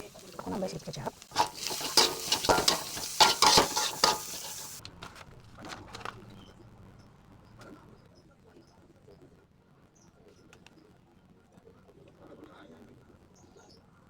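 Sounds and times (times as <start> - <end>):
spatula clattering against pan: 0.0 - 4.8
stir-fry sizzling: 0.0 - 4.9.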